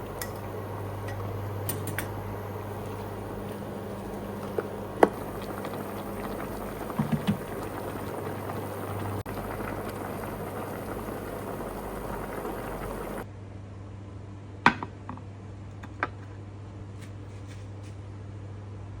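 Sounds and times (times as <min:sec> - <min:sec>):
pot bubbling at the boil: 0:00.0 - 0:13.2
low steady hum: 0:00.0 - 0:13.8
utensil clinking against pot: 0:00.1 - 0:02.2.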